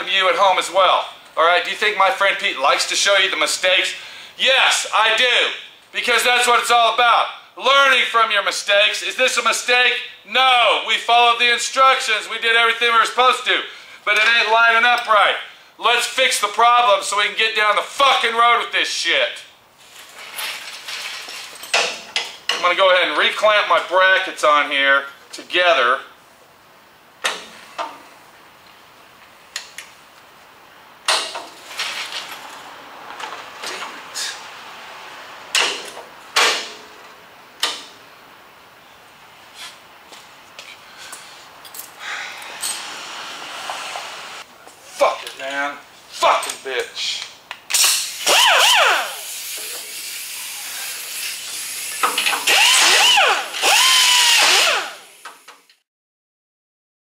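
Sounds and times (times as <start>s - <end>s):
metal brackets rattling and scraping: 19.9s - 22.8s
metal brackets clanking: 20.3s - 22.7s
rotary burring tool whining: 52.0s - 55.2s.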